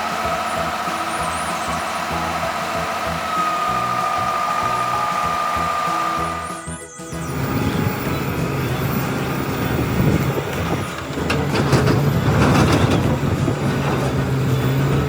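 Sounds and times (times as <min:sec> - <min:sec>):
truck engine running: 0:00.0 - 0:15.0
clicks and clatter: 0:10.5 - 0:15.0.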